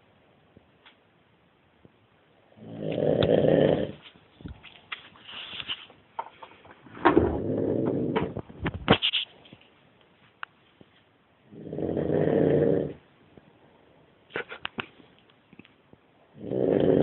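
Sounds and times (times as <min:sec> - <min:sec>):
man snoring loudly: 0:02.6 - 0:04.0, 0:11.5 - 0:13.0, 0:16.4 - 0:17.0.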